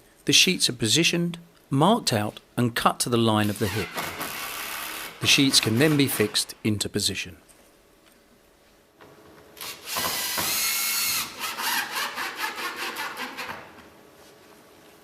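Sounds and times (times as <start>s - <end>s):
power drill running: 3.6s - 6.2s, 9.6s - 13.5s.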